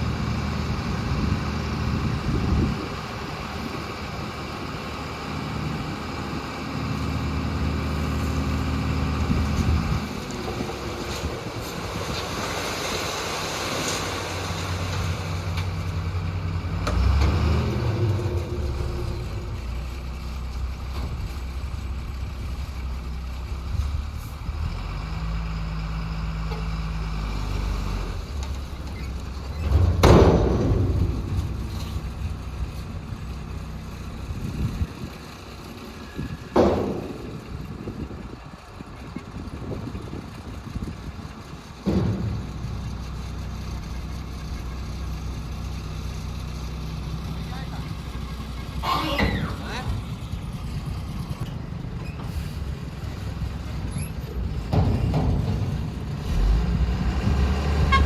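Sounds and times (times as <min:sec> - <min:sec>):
diesel engine running under load: 0:00.0 - 0:58.0.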